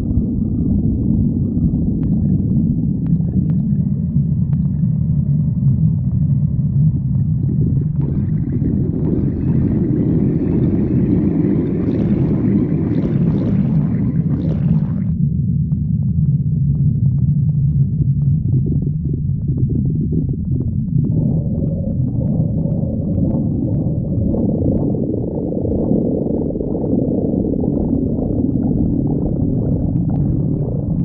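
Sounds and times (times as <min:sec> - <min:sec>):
stomach growling: 0:00.0 - 0:15.2, 0:16.6 - 0:31.0
gurgling: 0:07.4 - 0:15.1.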